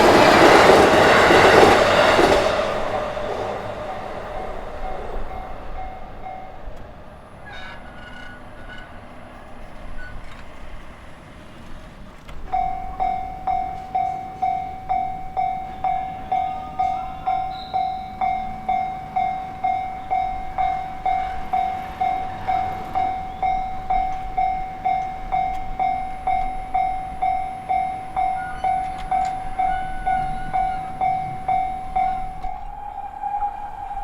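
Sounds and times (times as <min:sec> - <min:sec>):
level crossing warning bell: 0:00.0 - 0:10.4, 0:12.4 - 0:34.0
steady ringing tone: 0:12.5 - 0:34.0.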